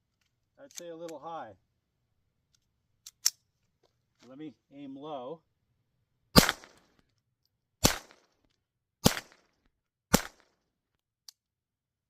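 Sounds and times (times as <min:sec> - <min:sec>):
pistol shots: 0:06.3 - 0:06.9, 0:07.8 - 0:08.4, 0:09.0 - 0:09.5, 0:10.1 - 0:10.6.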